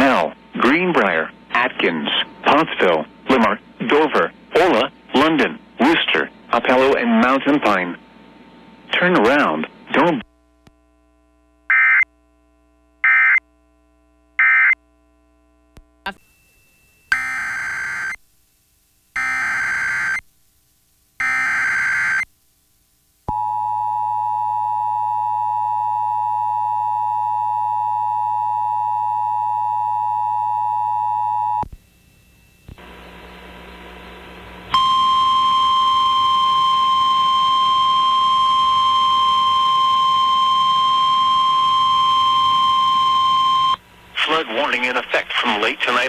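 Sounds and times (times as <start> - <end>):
static: 31.6 - 37.9, 41.2 - 46.0.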